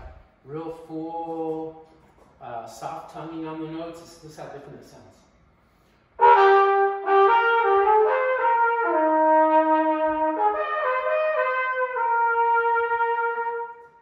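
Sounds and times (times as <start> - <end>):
trumpet playing legato: 6.2 - 14.0.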